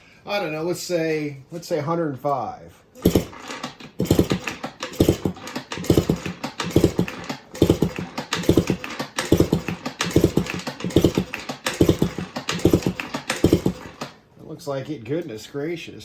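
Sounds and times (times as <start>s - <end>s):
engine cranking rhythmic huffing: 3.0s - 14.2s.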